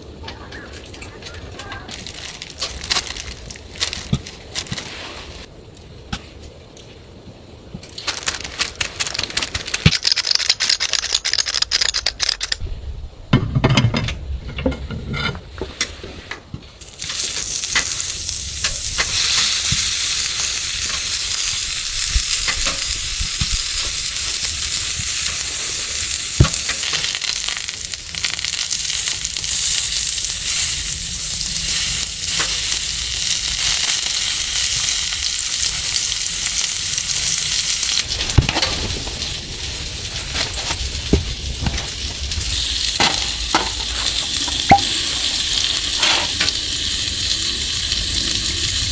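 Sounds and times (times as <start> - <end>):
sharp clicks: 8.5 - 12.6
food sizzling in a pan: 16.8 - 48.9.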